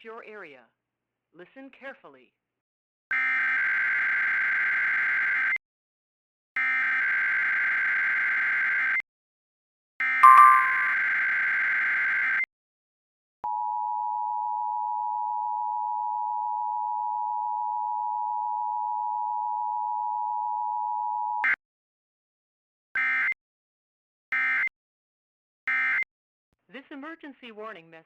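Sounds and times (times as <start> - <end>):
two-tone attention signal: 10.2 - 11.0.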